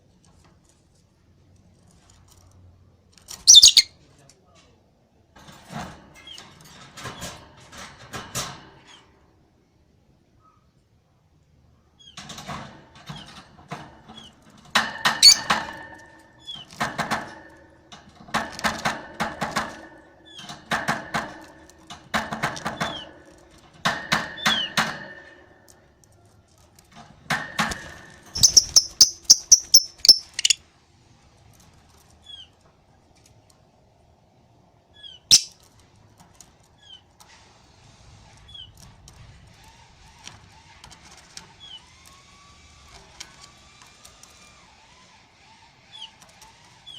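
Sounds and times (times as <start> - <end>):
bird chattering raspily: 3.5 - 3.9, 15.2 - 15.4, 28.4 - 30.6, 35.3 - 35.5
high piping bird notes: 3.5 - 3.9, 15.2 - 15.4, 28.4 - 30.6, 35.3 - 35.5
short bird chirps: 3.5 - 3.9, 28.4 - 30.6.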